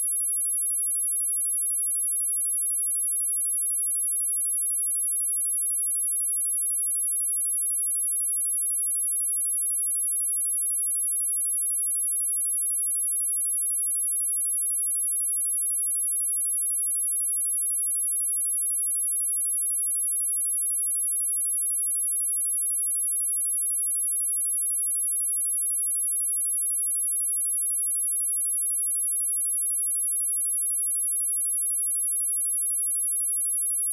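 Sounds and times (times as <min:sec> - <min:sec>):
high-pitched sine test tone: 0:32.9 - 0:33.9.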